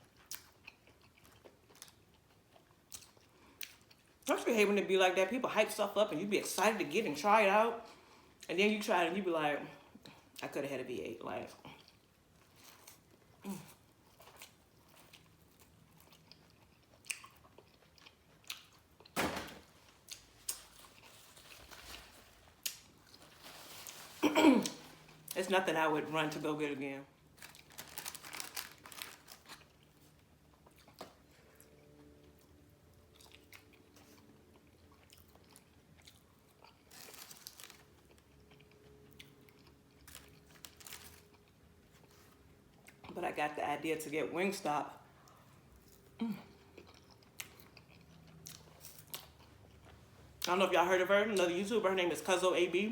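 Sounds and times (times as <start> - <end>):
chewing and biting food: 0.0 - 4.3, 11.6 - 19.2, 27.2 - 43.2, 45.2 - 50.5.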